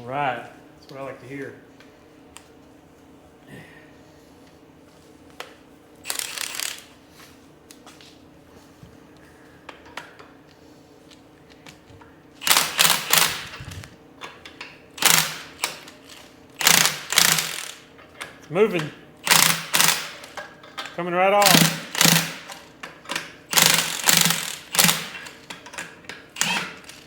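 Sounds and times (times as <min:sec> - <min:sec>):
ratchet wrench clicking: 0:06.1 - 0:06.9, 0:15.0 - 0:17.9, 0:19.2 - 0:20.4, 0:21.4 - 0:22.7, 0:23.5 - 0:25.7, 0:26.4 - 0:27.0.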